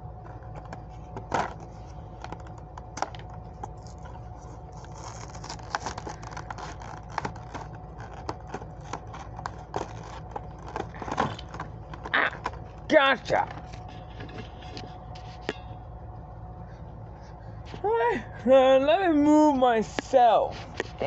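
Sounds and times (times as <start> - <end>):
steady low hum: 0.0 - 21.0
packaging being opened: 0.3 - 12.8.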